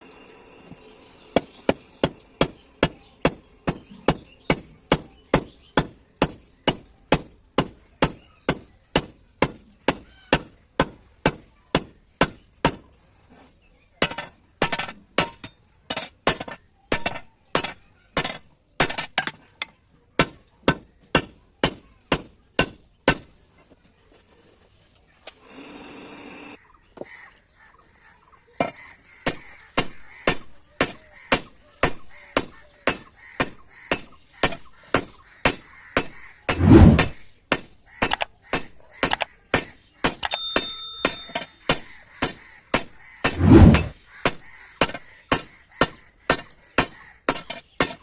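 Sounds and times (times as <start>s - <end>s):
hammer striking steel on anvil: 40.2s - 41.8s.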